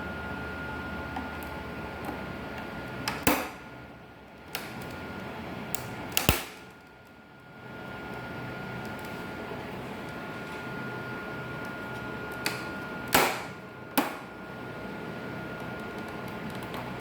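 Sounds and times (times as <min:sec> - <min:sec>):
faint hum: 0:00.0 - 0:17.0
plastic clips snapping: 0:05.7 - 0:06.8.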